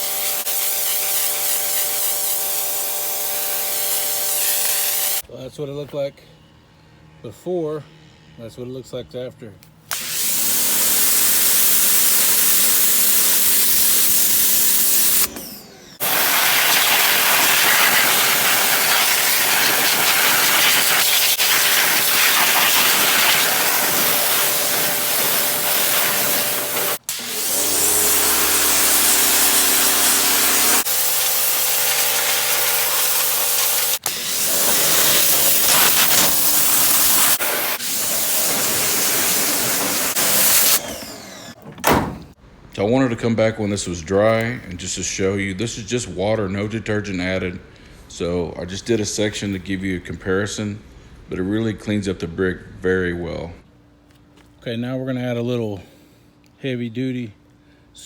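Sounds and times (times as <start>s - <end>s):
pressure washer water jet hiss: 0.0s - 5.2s, 10.0s - 42.2s
motor hum: 12.3s - 42.4s.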